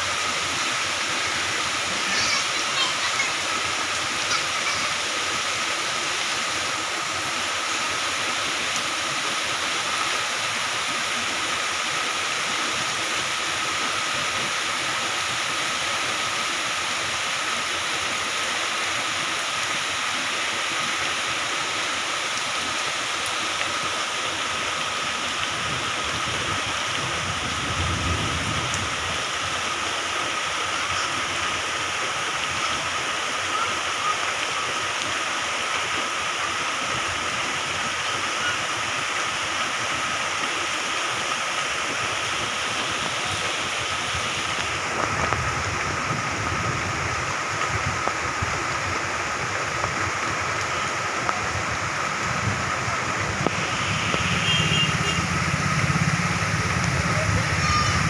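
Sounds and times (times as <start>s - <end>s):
heavy rain falling: 0.0s - 58.0s
low rumble: 51.7s - 58.0s.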